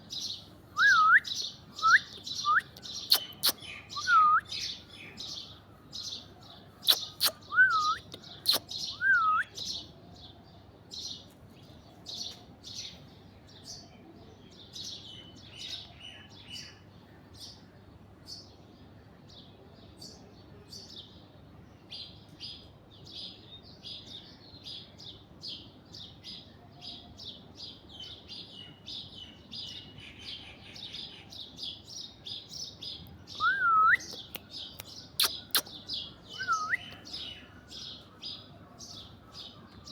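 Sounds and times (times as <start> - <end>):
birds chirping rapidly: 0.0 - 13.9, 21.9 - 39.9
loud whistled bird calls: 0.8 - 4.8, 6.8 - 9.7, 35.1 - 37.4.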